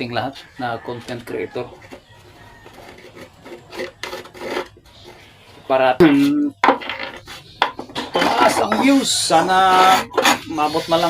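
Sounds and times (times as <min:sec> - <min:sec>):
hand rasping across wooden chair: 0:08.2 - 0:11.0.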